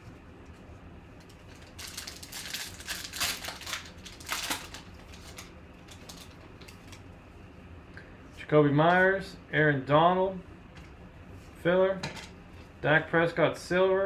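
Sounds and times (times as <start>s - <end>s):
foil pack crinkling and tearing: 1.3s - 7.0s.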